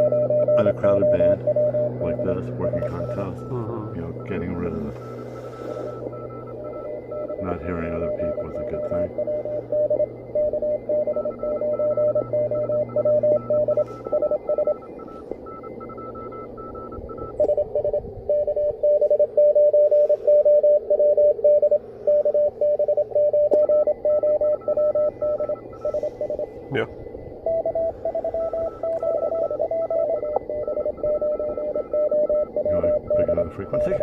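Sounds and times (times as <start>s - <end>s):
morse code tone: 0.0s - 34.0s
weaker higher morse signal: 0.0s - 34.0s
radio band hiss: 0.6s - 9.8s, 25.1s - 27.1s, 32.6s - 34.0s.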